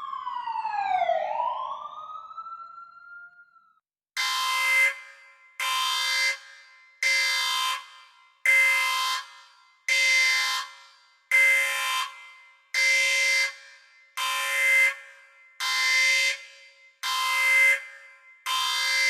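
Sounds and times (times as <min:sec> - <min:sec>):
alarm buzzer blasts: 0:04.2 - 0:15.0.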